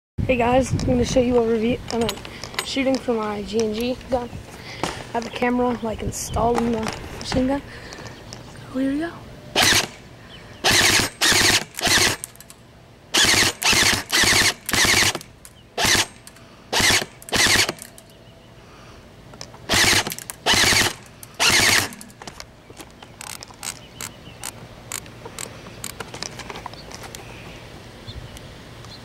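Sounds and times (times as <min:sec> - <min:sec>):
airsoft gun rapid-fire bursts: 0:09.6 - 0:10.0, 0:10.6 - 0:12.2, 0:13.2 - 0:15.2, 0:15.8 - 0:16.1, 0:16.8 - 0:17.8, 0:19.7 - 0:22.0.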